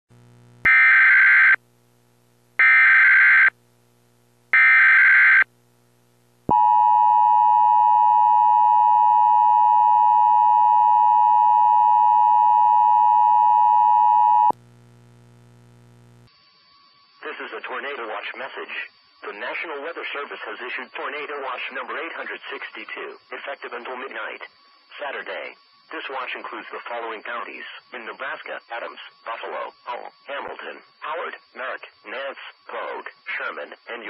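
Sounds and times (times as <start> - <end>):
faint low hum: 0.1 - 0.7, 1.6 - 2.8, 5.5 - 33.2
loud steady attention tone: 0.1 - 5.6, 6.4 - 20.0.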